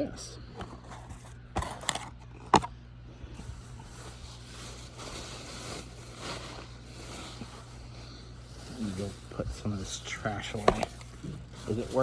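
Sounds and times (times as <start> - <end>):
steady low hum: 0.0 - 12.0
packaging rustling and scraping: 0.4 - 12.0.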